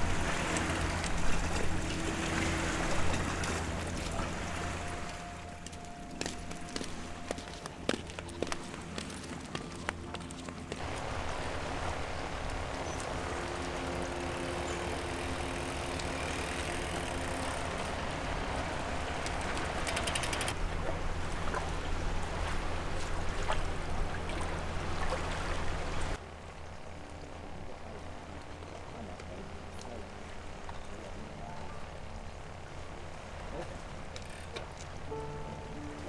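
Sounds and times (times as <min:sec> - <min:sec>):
wind and tyre noise: 0:00.0 - 0:36.0
bicycle freewheel clicking: 0:14.0 - 0:20.6, 0:34.2 - 0:34.5.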